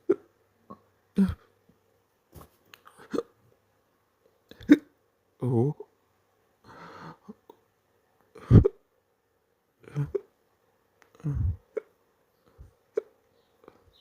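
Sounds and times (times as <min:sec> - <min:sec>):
person hiccupping: 0:00.0 - 0:01.5, 0:02.8 - 0:03.4, 0:04.5 - 0:05.0, 0:08.4 - 0:08.8, 0:09.8 - 0:10.4, 0:11.1 - 0:12.0
soft breath: 0:06.6 - 0:07.4.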